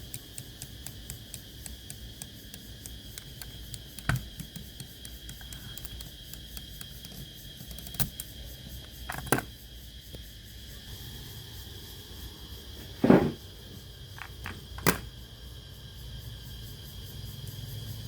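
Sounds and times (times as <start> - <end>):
clicks and knocks from handling: 14.2 - 15.1.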